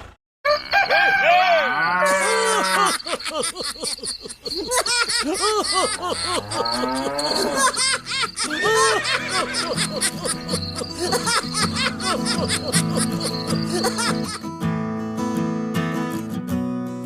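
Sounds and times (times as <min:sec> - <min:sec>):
laughter: 0:02.2 - 0:14.4.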